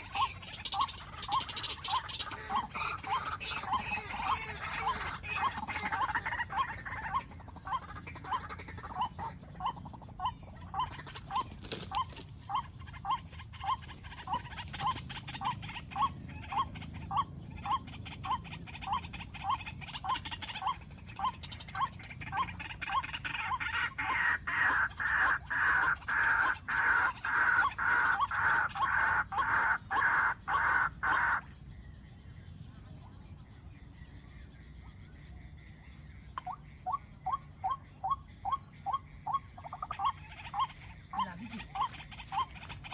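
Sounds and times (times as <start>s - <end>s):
bird calling repeated notes: 37.4s - 42.9s.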